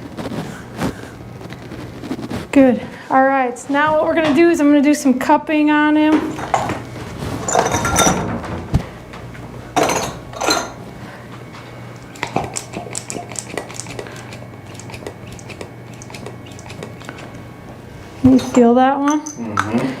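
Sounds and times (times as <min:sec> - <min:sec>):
cups clinking and knocking: 0:06.2 - 0:06.8, 0:07.5 - 0:08.2, 0:09.8 - 0:10.8, 0:12.2 - 0:14.1, 0:18.3 - 0:19.9.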